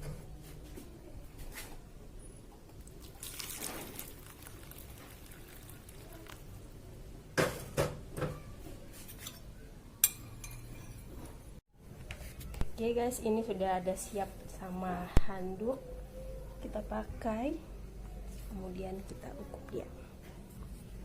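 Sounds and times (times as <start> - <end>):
hot water pouring and splashing: 2.8 - 6.7
kitchenware clinking: 9.0 - 11.5.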